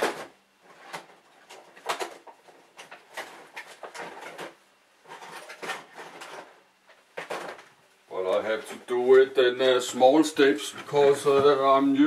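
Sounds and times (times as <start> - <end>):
small objects clicking and rustling: 0.0 - 7.8.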